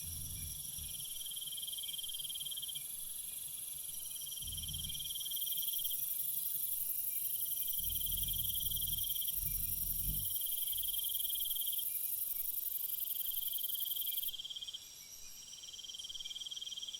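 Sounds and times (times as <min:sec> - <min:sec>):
faint low rumble: 0:00.0 - 0:01.3, 0:04.4 - 0:05.3, 0:07.7 - 0:11.0
pulsed insect chirps: 0:04.2 - 0:12.0.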